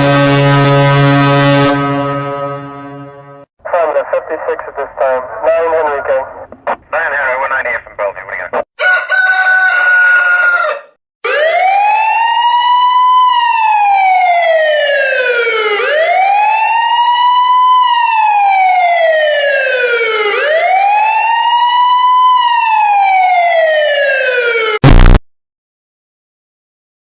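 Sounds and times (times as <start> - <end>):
emergency siren wailing: 0.0 - 3.2, 8.8 - 24.8.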